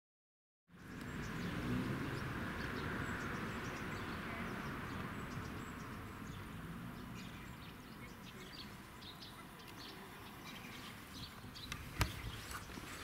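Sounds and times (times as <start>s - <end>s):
sparrows chirping: 0.7s - 13.0s.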